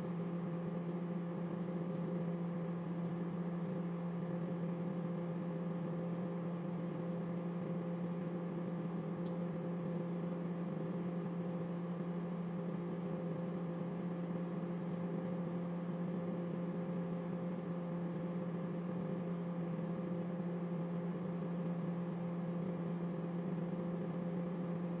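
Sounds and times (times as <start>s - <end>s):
microwave oven humming: 0.0s - 25.0s.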